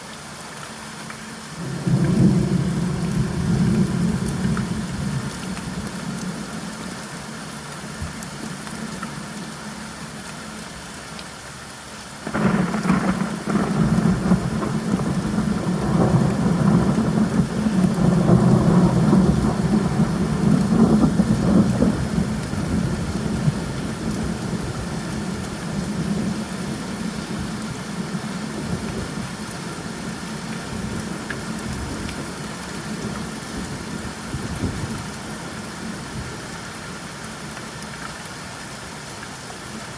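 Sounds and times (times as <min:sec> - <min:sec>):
steady rainfall: 0:00.0 - 0:39.9
thunder rumbling: 0:01.6 - 0:06.4, 0:12.3 - 0:29.4.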